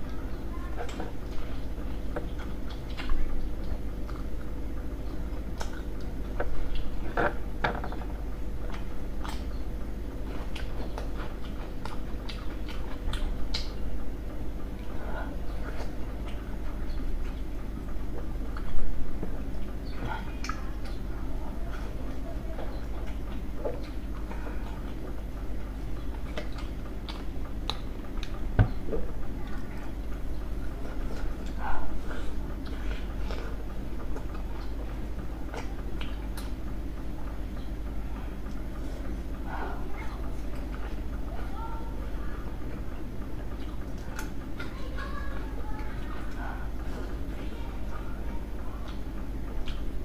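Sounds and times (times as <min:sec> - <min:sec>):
faint steady hum: 0:00.0 - 0:50.0
close chewing mouth smacks: 0:00.8 - 0:07.4, 0:08.6 - 0:09.6, 0:10.2 - 0:14.0, 0:19.4 - 0:36.7, 0:43.4 - 0:44.8, 0:48.8 - 0:50.0.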